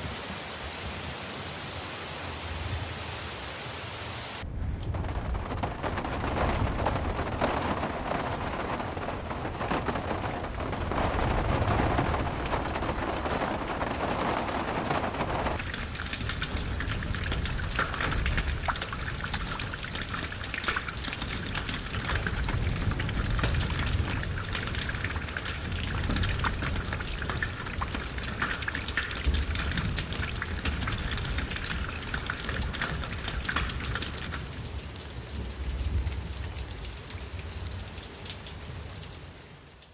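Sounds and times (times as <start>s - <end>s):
steady rain falling: 0.0s - 39.9s
low rumble: 4.4s - 15.6s.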